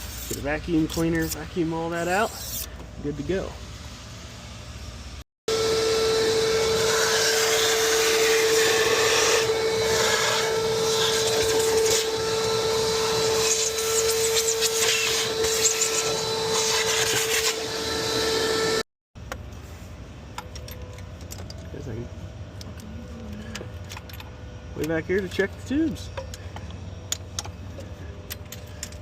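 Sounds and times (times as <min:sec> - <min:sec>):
vacuum cleaner whining: 0:05.5 - 0:18.9.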